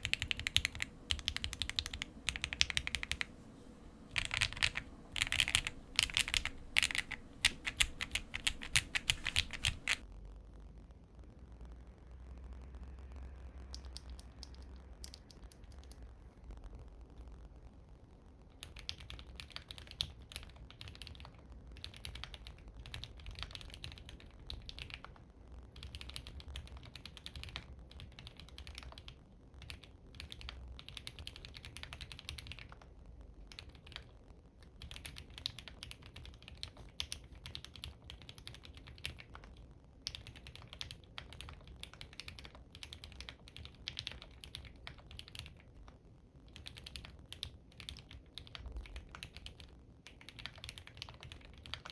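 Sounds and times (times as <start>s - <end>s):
mechanical keyboard key clacks: 4.2s - 10.0s.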